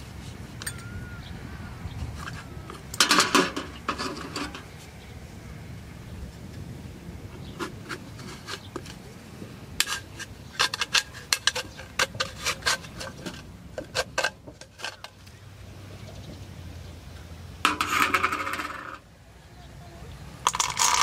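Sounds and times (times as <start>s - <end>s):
metallic clinks and clatters: 17.7s - 19.0s, 20.5s - 21.0s.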